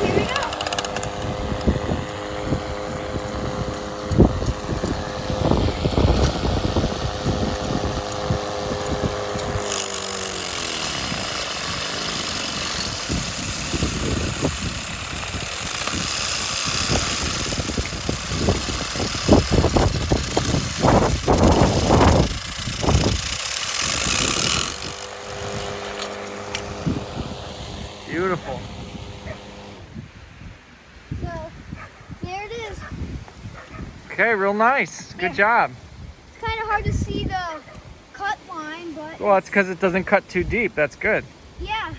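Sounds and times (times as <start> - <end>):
electric motor whine: 0.0 - 30.1
mower whirring as it cuts grass: 0.0 - 30.2, 31.2 - 41.9.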